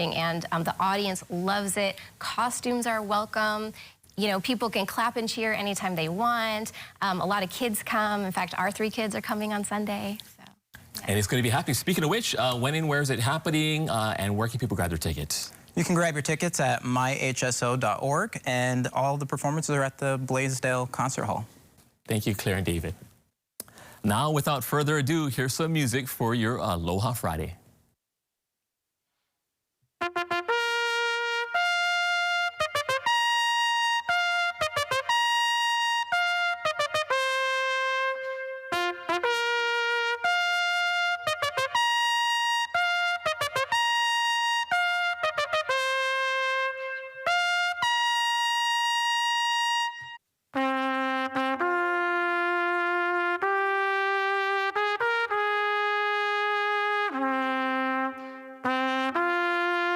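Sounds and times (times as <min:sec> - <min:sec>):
solo trumpet melody: 0:30.0 - 0:59.9.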